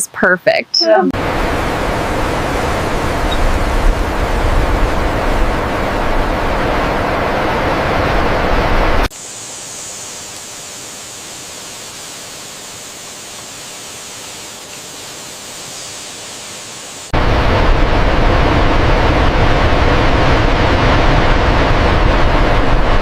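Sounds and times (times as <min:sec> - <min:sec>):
thin bright hiss: 0:09.2 - 0:17.1.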